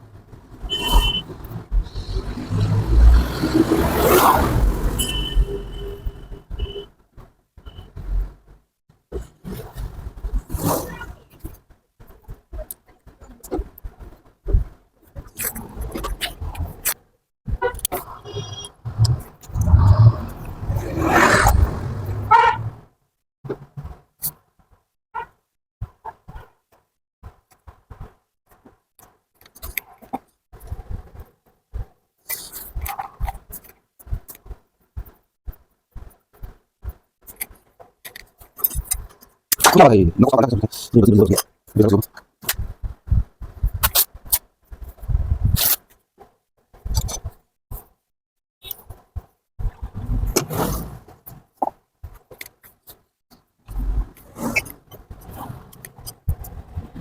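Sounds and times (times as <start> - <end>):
short low rumbles: 18.9 - 22.8.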